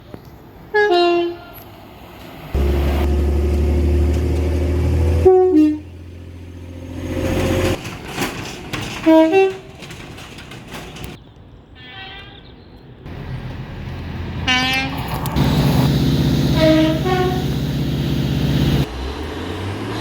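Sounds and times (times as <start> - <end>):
passing train rushing: 0.3 - 11.2, 13.1 - 20.0
train horn toots: 0.8 - 1.6, 5.0 - 6.0, 11.8 - 12.4, 14.5 - 18.8.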